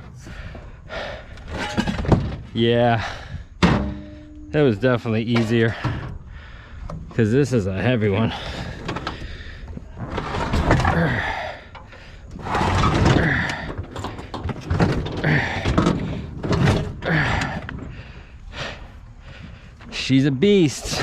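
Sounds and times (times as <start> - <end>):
metal scraping and screeching: 9.9 - 11.4, 12.3 - 15.8.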